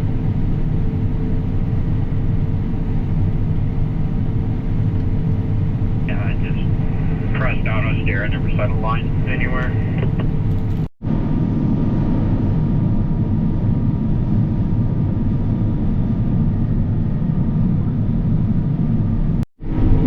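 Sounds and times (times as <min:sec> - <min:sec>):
diesel engine running: 0:00.1 - 0:10.9.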